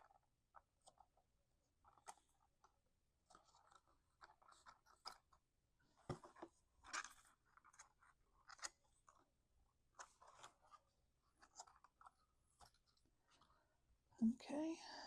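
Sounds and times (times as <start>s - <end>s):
cardstock rustling and crinkling: 1.8s - 13.6s.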